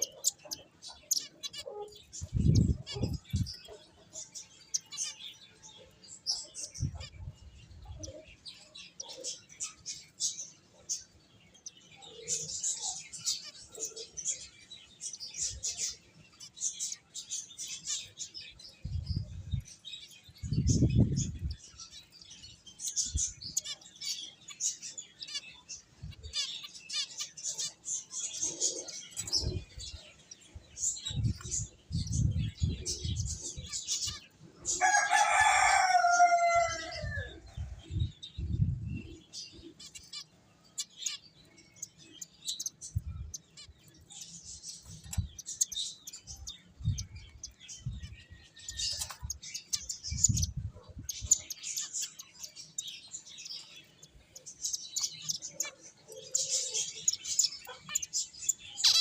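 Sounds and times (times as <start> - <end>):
finches chirping: 0.0 - 36.3, 37.6 - 59.0
rooster crowing: 34.8 - 37.4.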